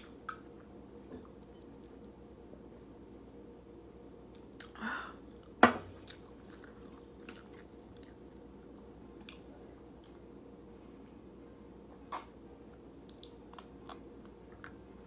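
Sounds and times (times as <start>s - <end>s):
person chewing food: 4.4s - 10.4s, 13.0s - 14.8s.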